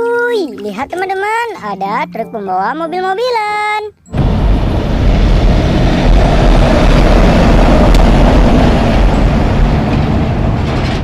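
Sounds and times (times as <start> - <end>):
heavy truck engine running: 4.2 - 11.0.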